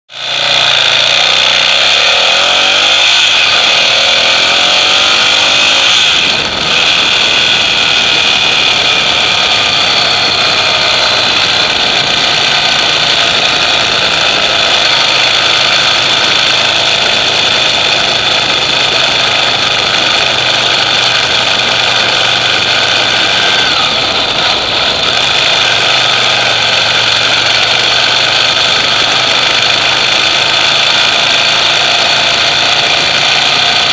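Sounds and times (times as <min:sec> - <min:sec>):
motorcycle engine idling: 0:00.1 - 0:33.9.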